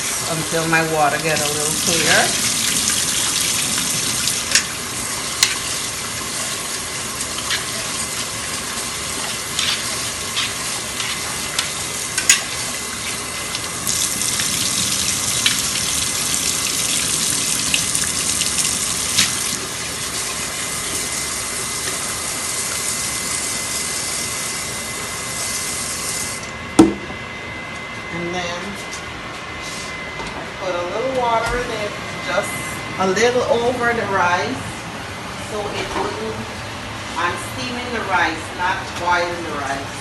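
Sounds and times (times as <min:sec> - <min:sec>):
rice rinsed by hand: 0:00.0 - 0:26.4
kitchen tap running: 0:00.0 - 0:27.0.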